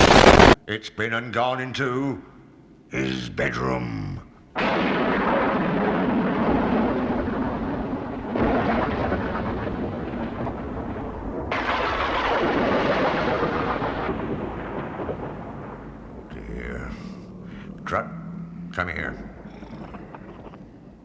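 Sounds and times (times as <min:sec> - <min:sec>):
deep noisy rumbles: 0:04.6 - 0:21.0.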